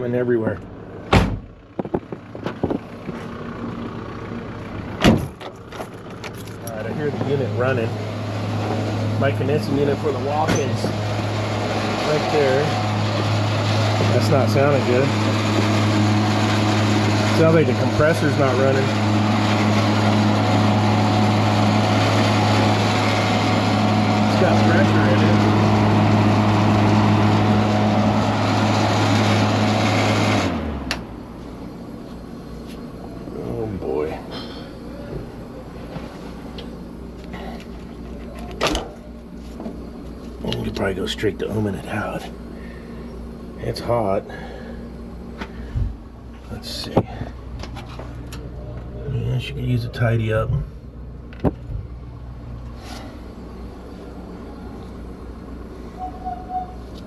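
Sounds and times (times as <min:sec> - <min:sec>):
low mechanical hum: 0:00.0 - 0:57.0.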